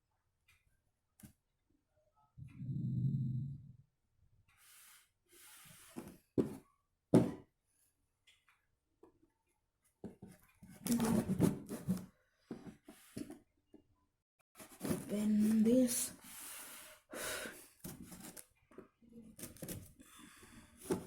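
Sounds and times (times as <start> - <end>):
sharp knocks on box: 7.2 - 7.4
cardboard box rubbing and scraping: 10.9 - 12.0.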